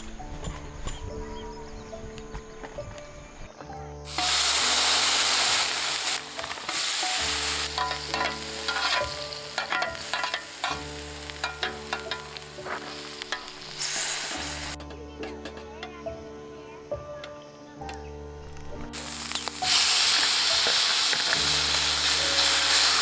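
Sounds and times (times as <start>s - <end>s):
food sizzling in a pan: 4.1s - 14.8s, 19.0s - 23.0s
utensil scraping a pan: 4.1s - 14.8s.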